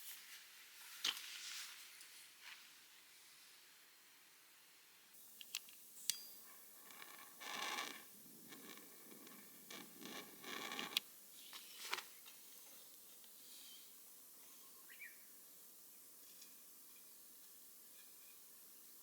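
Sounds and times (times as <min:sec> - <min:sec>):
small clicks: 0:05.4 - 0:06.2
scratching and rasping scrapes: 0:06.8 - 0:11.0.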